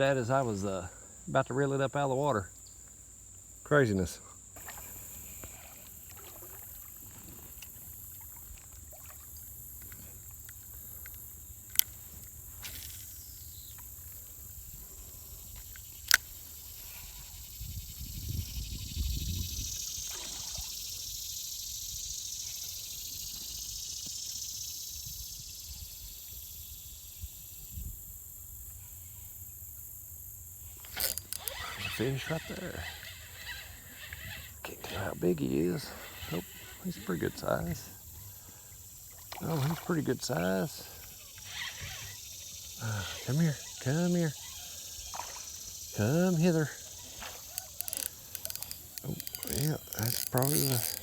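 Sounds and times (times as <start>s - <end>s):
insect drone: 0.0s - 51.0s
hissing rustle: 30.2s - 51.0s
sharp clicks: 30.8s - 31.9s, 47.2s - 51.0s.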